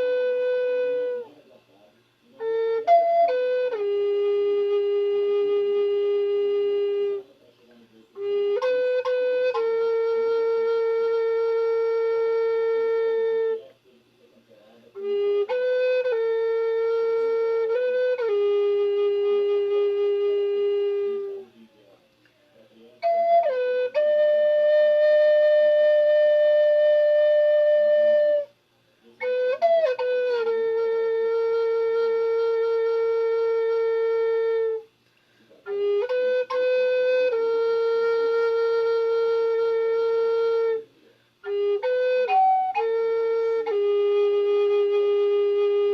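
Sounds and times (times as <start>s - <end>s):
flute playing slow melody: 0.0s - 13.8s, 14.5s - 21.6s, 22.8s - 35.0s, 35.6s - 45.9s.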